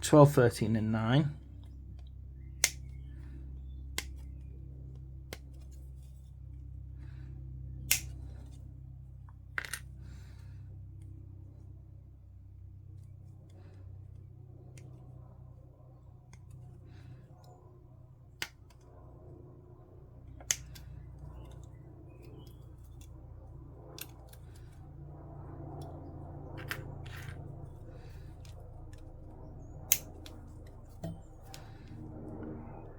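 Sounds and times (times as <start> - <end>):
low hum: 0.0 - 32.9
sprue cutters snipping plastic: 20.4 - 21.6, 29.8 - 30.4.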